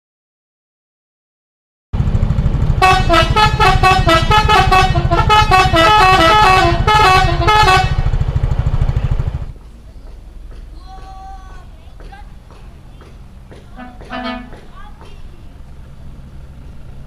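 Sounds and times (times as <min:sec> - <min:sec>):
low engine rumble: 0:02.0 - 0:17.0
musical bus horn tune: 0:02.8 - 0:08.3, 0:13.8 - 0:14.6.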